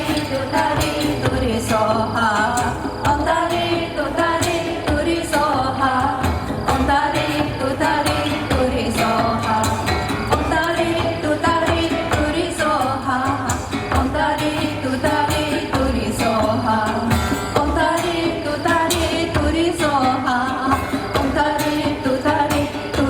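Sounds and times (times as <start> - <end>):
live folk band: 0.0 - 23.0
woman singing: 0.0 - 23.0.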